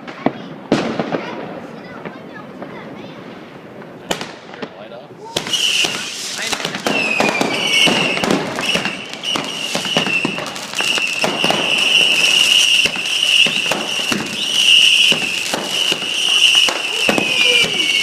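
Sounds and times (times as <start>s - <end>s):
fireworks bangs and crackles: 0.0s - 18.0s
high whistle: 5.4s - 6.2s, 6.9s - 18.0s.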